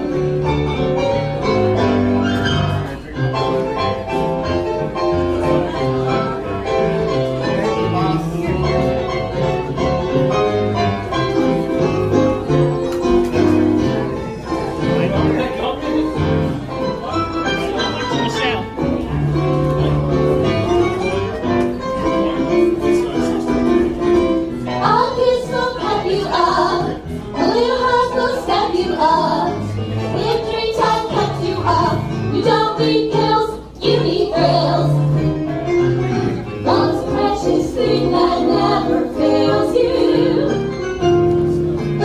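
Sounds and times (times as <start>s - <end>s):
instrumental music: 0.0s - 42.0s
voices singing: 24.8s - 35.2s, 36.6s - 40.8s.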